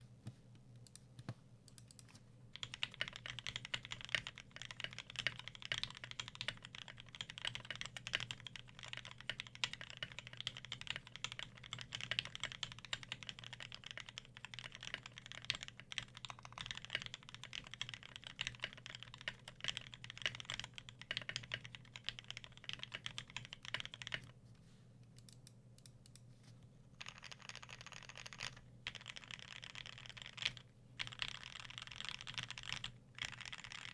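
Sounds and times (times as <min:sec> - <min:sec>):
typing on mechanical keyboard: 0:02.6 - 0:24.3, 0:27.0 - 0:33.9.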